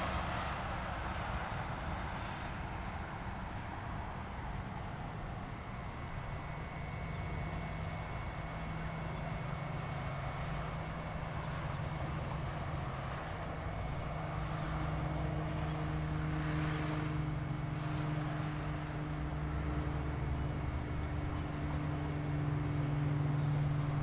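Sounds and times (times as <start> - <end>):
engine humming: 5.8 - 24.0
higher engine tone: 6.6 - 24.0.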